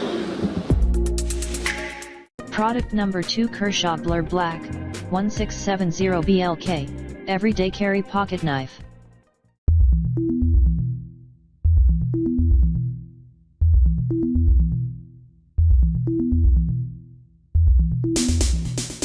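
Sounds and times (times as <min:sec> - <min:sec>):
drum machine beat with hi-hats: 0:00.7 - 0:08.6, 0:17.8 - 0:19.0
deep synth bass riff: 0:03.5 - 0:07.3, 0:09.7 - 0:18.8.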